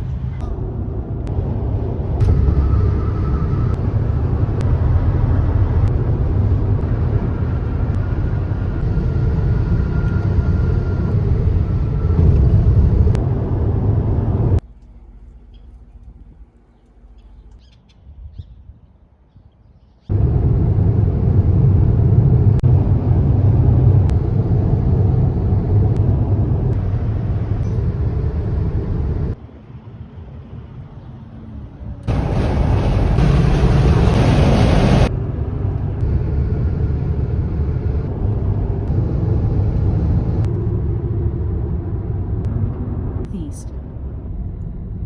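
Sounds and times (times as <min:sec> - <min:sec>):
car road and wind noise: 0:00.0 - 0:18.9, 0:20.1 - 0:45.0.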